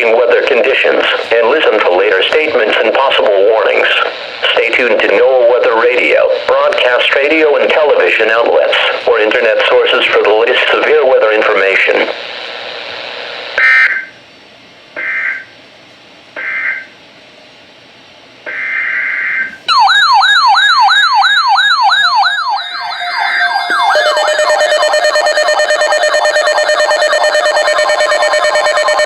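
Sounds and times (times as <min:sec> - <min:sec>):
electronic siren-like alert tone: 0:19.7 - 0:29.0
screeching data bursts: 0:22.8 - 0:29.0.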